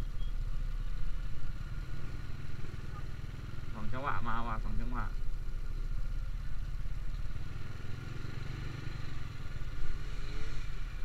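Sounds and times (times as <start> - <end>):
motorcycle engines running: 0.0 - 11.0
two-stroke motorcycle approaching: 5.9 - 11.0.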